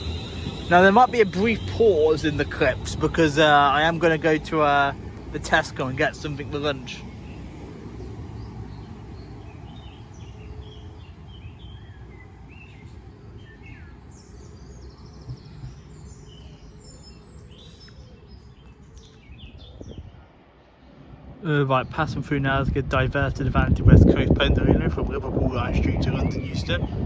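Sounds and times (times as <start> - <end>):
small birds chirping: 0.0 - 21.1.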